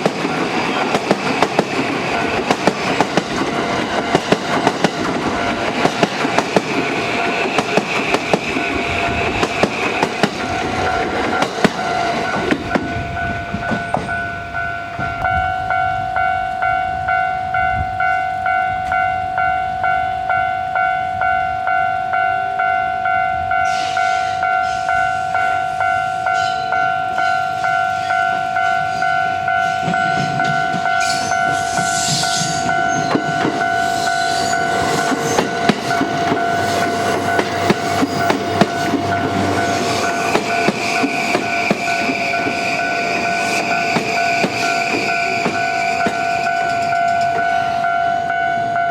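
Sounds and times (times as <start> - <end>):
train wheels clattering over rail joints: 0.0 - 15.3, 29.6 - 47.6
level-crossing warning bell ringing: 0.0 - 48.9.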